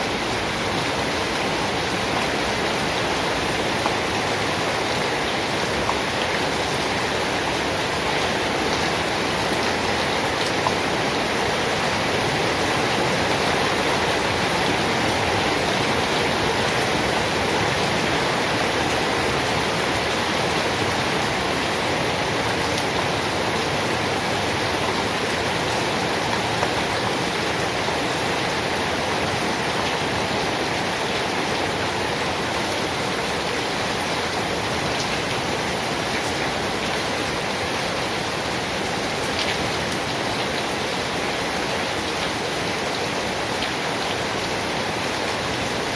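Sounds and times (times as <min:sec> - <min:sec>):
heavy rain: 0:00.0 - 0:45.9.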